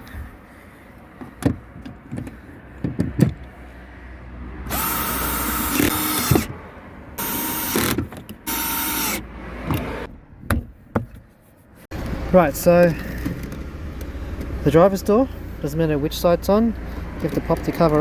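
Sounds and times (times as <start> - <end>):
small electric motor whirring: 4.7 - 6.5, 7.2 - 9.2.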